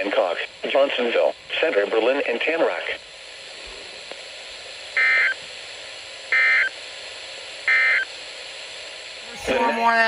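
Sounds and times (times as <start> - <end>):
radio hiss: 0.0 - 10.0
digital data tone bursts: 5.0 - 5.4, 7.7 - 8.1.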